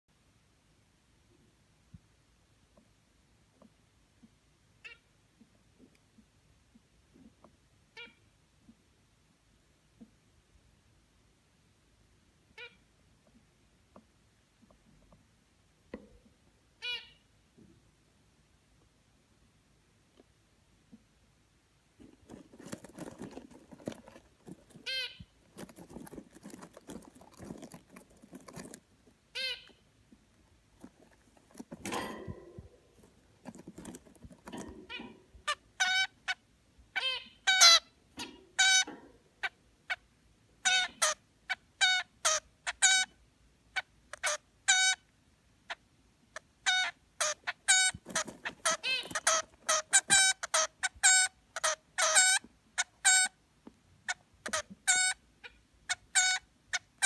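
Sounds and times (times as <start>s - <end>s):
bird high-pitched calls: 12.6s - 12.8s, 16.8s - 17.2s, 24.7s - 27.7s, 29.3s - 29.8s, 34.4s - 36.4s, 37.0s - 40.0s
soft scratchy sounds: 21.9s - 36.4s, 47.2s - 52.9s.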